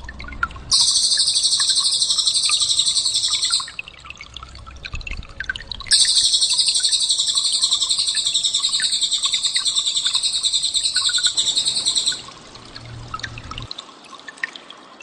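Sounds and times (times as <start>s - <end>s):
bird trilling: 0.7s - 3.8s, 5.9s - 12.3s.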